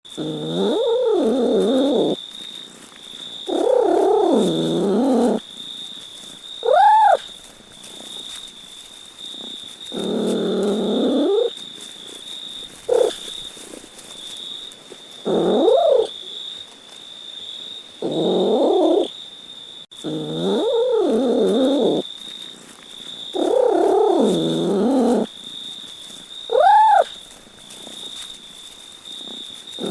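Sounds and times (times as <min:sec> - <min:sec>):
cat meowing: 0:06.6 - 0:07.2, 0:15.3 - 0:16.1, 0:26.5 - 0:27.1.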